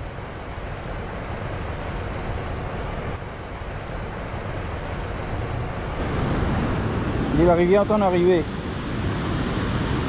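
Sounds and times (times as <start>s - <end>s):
river water rushing: 6.0s - 10.0s.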